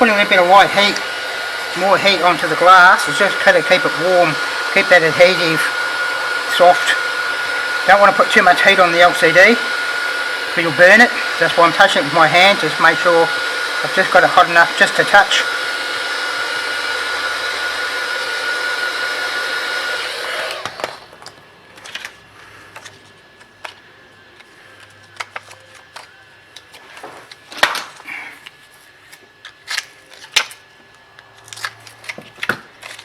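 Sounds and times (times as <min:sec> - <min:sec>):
hot air gun blowing: 0:00.0 - 0:21.1
plastic card and blade scraping: 0:31.3 - 0:33.0.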